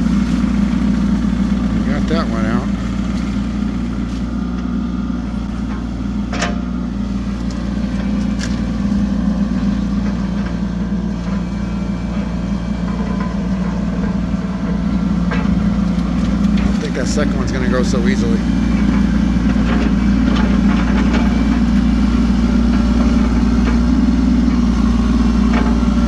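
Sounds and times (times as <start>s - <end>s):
excavator engine running: 0.0s - 26.0s.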